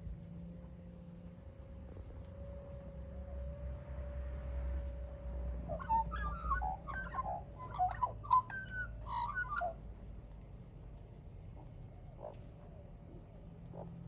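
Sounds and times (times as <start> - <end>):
magpie warbling: 5.8 - 9.8.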